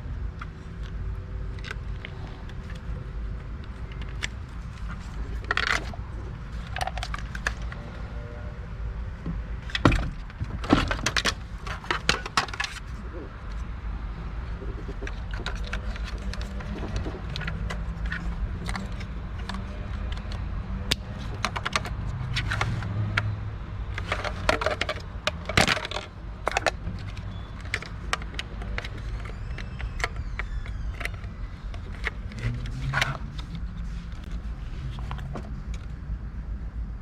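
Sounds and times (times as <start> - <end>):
hand tools clicking and clinking: 23.9 - 30.4.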